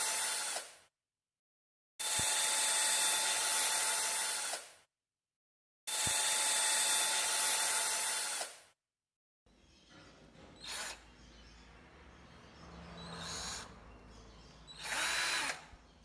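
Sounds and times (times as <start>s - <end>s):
cordless drill motor whine: 10.6s - 11.0s, 14.7s - 15.7s.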